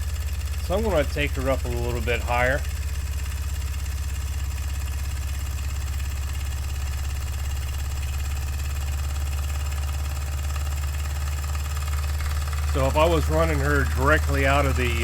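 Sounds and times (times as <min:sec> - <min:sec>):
toy steam engine running fast: 0:09.8 - 0:15.0.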